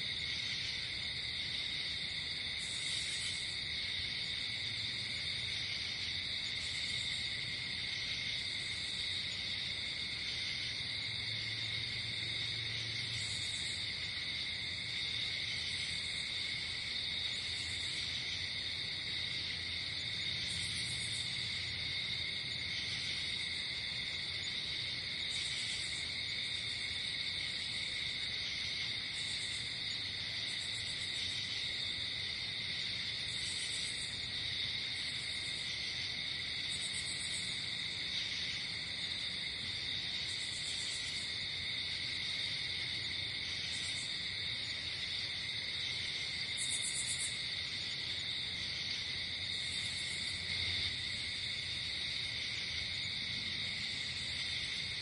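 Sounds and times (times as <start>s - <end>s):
crickets trilling: 0.0s - 55.0s
high insect chirps: 33.0s - 55.0s.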